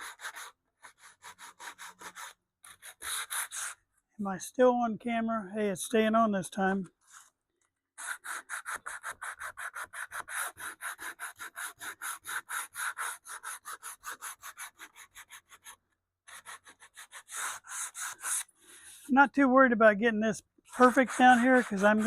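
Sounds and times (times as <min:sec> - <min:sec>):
sandpaper scraping wood: 0:00.0 - 0:03.8, 0:08.0 - 0:19.1, 0:20.7 - 0:22.0.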